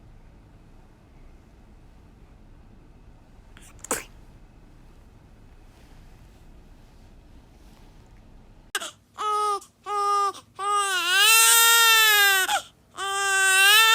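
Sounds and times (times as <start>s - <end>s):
newborn baby crying: 8.8s - 13.9s.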